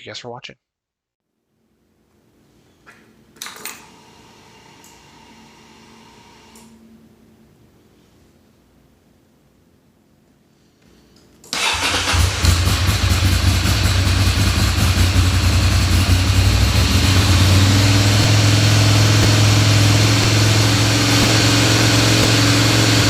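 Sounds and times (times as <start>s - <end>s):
motorcycle engine starting and idling: 11.5s - 23.0s.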